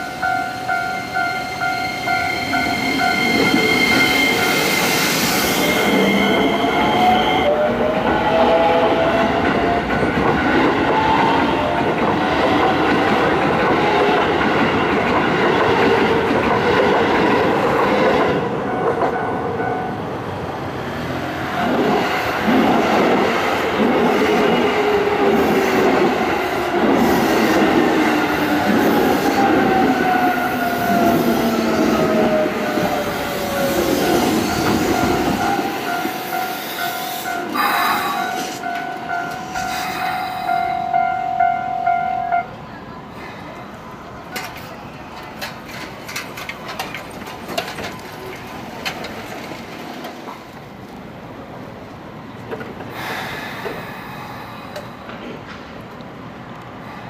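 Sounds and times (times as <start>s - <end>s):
steady high tone: 0.0s - 10.7s, 29.3s - 43.1s
train wheels clattering over rails: 44.3s - 50.7s, 52.4s - 56.0s.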